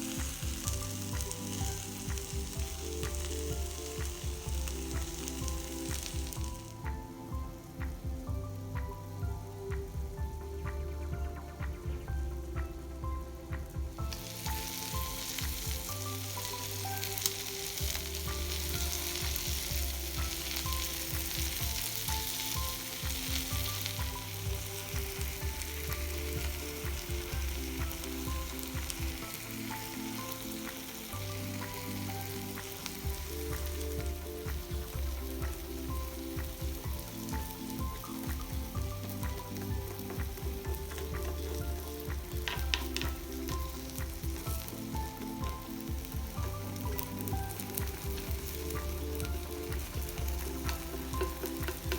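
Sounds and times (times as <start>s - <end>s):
background music: 0.0s - 51.9s
food sizzling in a pan: 0.0s - 51.9s.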